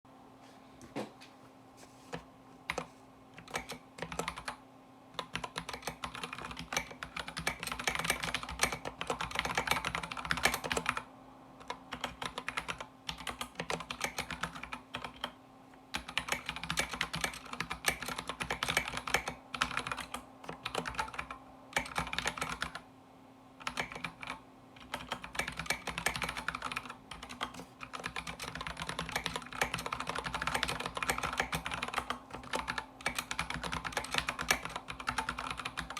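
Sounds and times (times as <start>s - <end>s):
mechanical keyboard typing: 2.1s - 4.6s, 5.2s - 22.8s, 23.6s - 35.9s.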